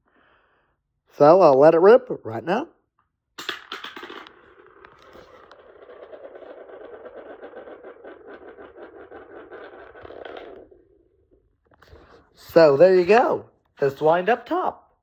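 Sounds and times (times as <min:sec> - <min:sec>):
spinning top clatter: 0:03.4 - 0:14.5
spinning top pulsing whir: 0:03.8 - 0:12.1.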